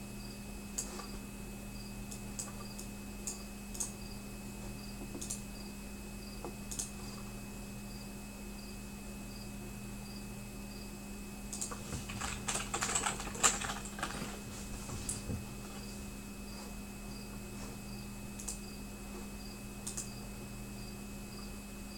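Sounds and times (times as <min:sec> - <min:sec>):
steady electrical hum: 0:00.0 - 0:21.9
sharp clicks: 0:05.2 - 0:05.4, 0:06.7 - 0:06.9, 0:11.5 - 0:14.2, 0:18.4 - 0:18.6, 0:19.8 - 0:20.2.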